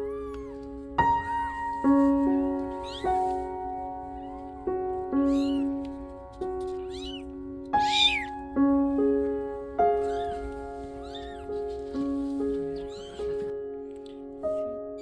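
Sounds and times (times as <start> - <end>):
kitten mewing: 0.0 - 0.7, 2.6 - 3.5, 5.2 - 5.8, 6.7 - 8.5, 10.0 - 11.5, 12.7 - 13.5
piano music: 0.0 - 15.0.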